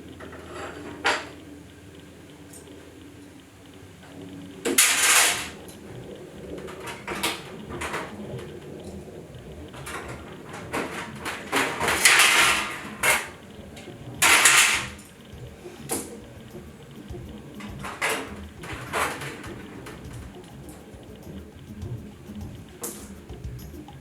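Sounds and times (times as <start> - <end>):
knocks and clatter of parts: 0.1 - 1.4, 4.1 - 24.0
scraping sounds: 4.8 - 23.3.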